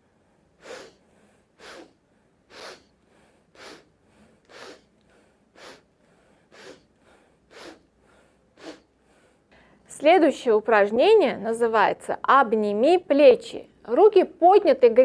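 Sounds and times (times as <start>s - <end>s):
sharp sniffs through the nose: 0.6s - 5.9s, 6.5s - 6.9s, 7.5s - 7.9s, 8.6s - 8.9s.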